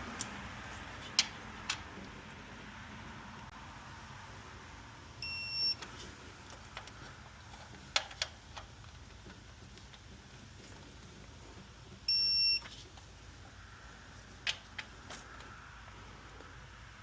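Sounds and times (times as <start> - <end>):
sharp clicks and knocks: 1.0 - 2.2, 6.5 - 10.3, 14.4 - 15.5
high electronic beep: 5.2 - 5.8, 12.1 - 12.6.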